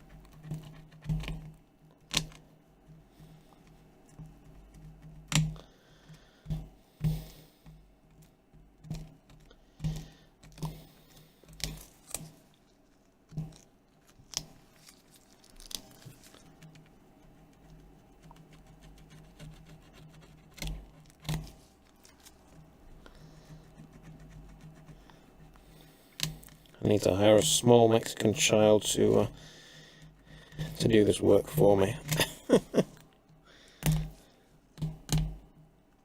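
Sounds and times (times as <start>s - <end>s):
plastic plectrum scraping adhesive: 13.3s - 22.3s.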